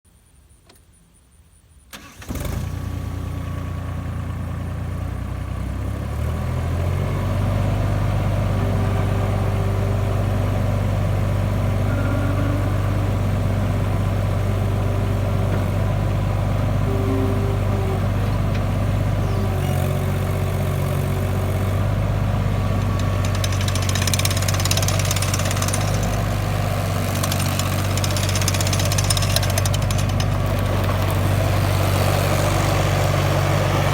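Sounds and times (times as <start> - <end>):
track loader engine running: 2.0 - 33.9.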